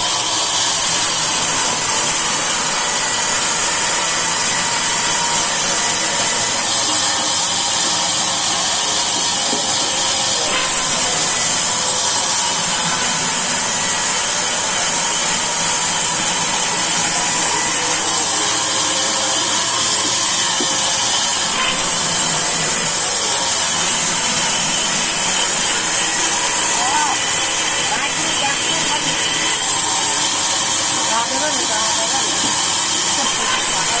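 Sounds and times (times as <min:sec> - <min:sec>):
sawmill saw running: 0:00.0 - 0:34.0.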